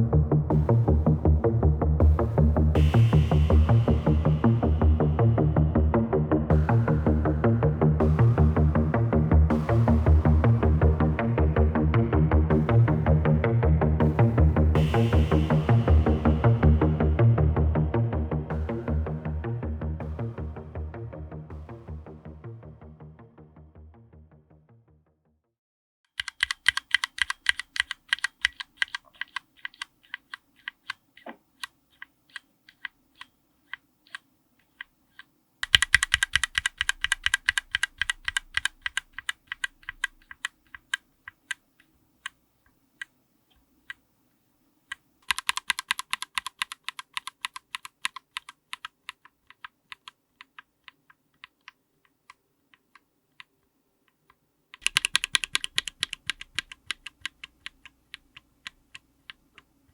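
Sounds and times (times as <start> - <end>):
mechanical keyboard typing: 26.1 - 41.6, 45.2 - 53.5, 54.8 - 59.4.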